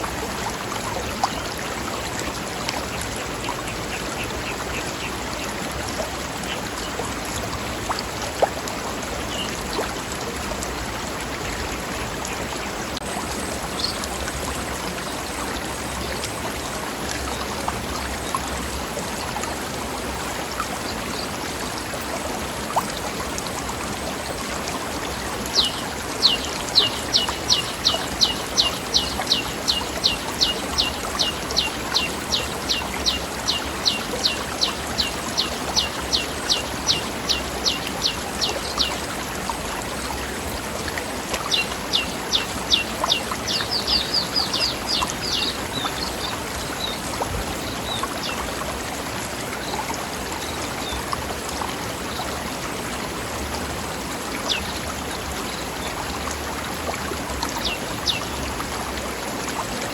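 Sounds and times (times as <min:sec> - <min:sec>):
river water running over rocks: 0:00.0 - 0:59.9.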